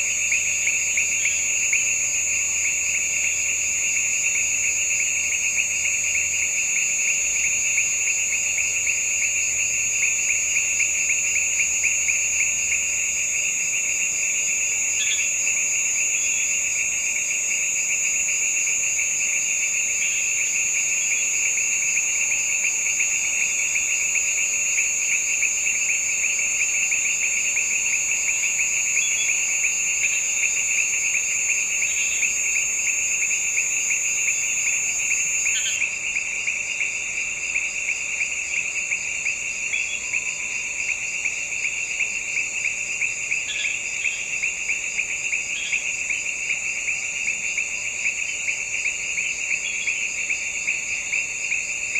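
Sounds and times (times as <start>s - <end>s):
insects trilling: 0.0s - 51.9s.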